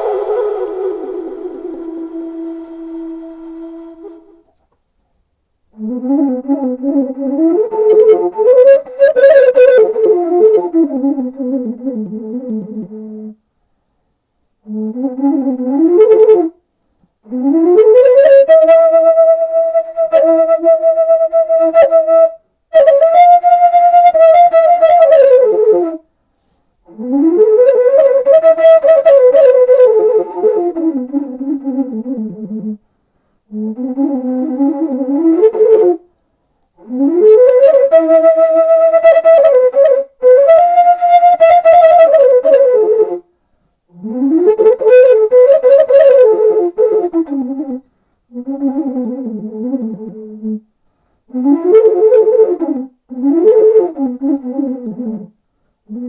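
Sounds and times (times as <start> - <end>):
bamboo flute sliding phrases: 0.0 - 4.6, 17.3 - 32.8, 33.5 - 36.0, 36.8 - 43.3, 43.9 - 50.6, 51.3 - 55.3.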